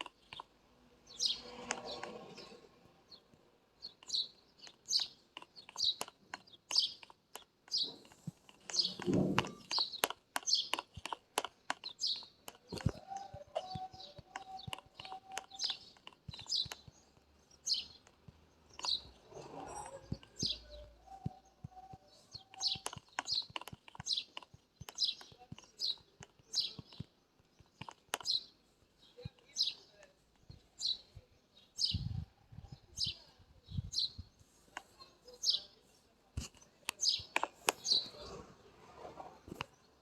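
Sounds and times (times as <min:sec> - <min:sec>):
sharp clicks: 0:00.0 - 0:02.5, 0:03.3 - 0:19.2, 0:19.8 - 0:29.8, 0:36.4 - 0:38.2
bird chirping: 0:00.0 - 0:40.0.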